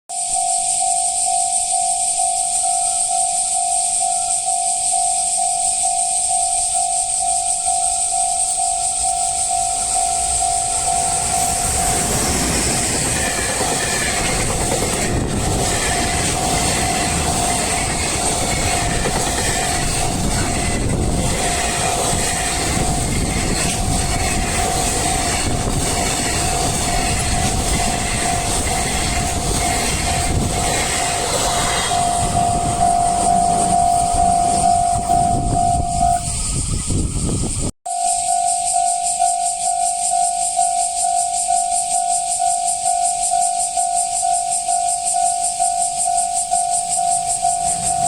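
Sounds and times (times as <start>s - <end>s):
level crossing bell ringing: 0.1s - 12.8s, 31.8s - 36.2s
freight train rumbling: 5.7s - 37.7s, 44.7s - 48.0s
wheels clacking over rail joints: 7.8s - 35.6s.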